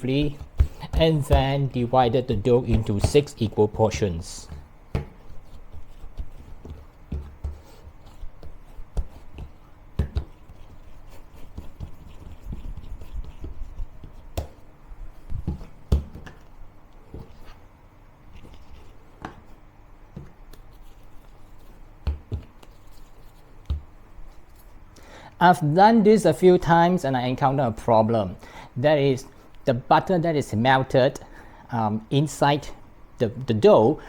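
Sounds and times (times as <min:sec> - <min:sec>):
dough thumps and knocks: 0:00.1 - 0:10.8, 0:11.5 - 0:14.7, 0:15.3 - 0:16.5, 0:22.0 - 0:22.7, 0:23.6 - 0:24.0.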